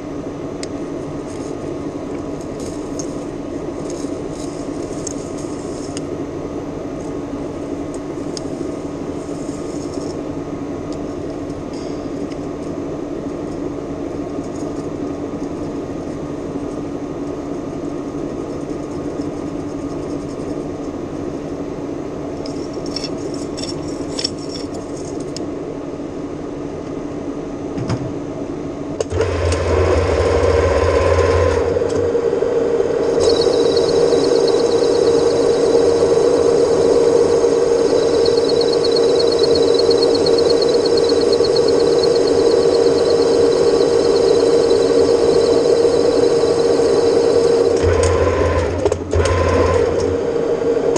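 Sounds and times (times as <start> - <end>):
metal lathe running: 29.1 - 50.9.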